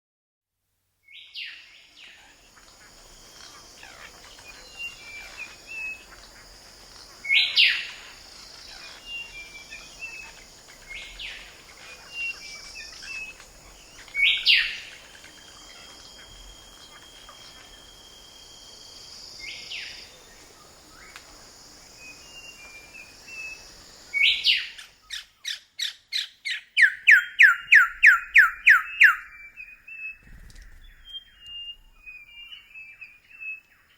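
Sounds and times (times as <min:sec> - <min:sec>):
sharp down-slurred bird calls: 0:23.0 - 0:33.9
soft bird chirps: 0:24.2 - 0:33.9
descending bird notes: 0:26.7 - 0:33.9.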